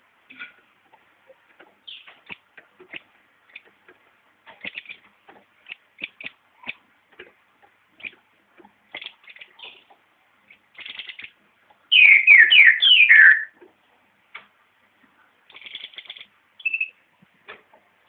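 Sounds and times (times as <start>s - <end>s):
bird buzzy chips: 10.8s - 11.3s, 15.5s - 16.9s.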